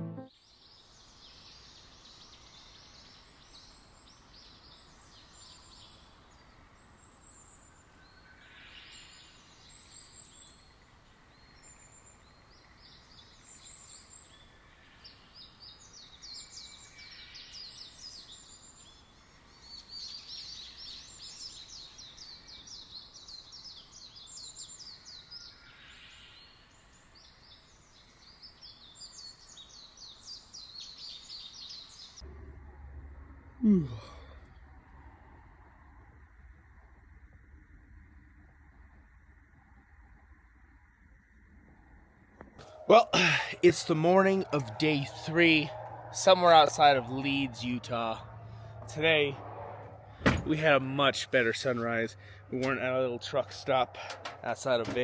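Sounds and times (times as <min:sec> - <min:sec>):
small birds chirping and trilling: 0:00.5 - 0:32.2, 0:42.6 - 0:49.4, 0:50.2 - 0:55.0.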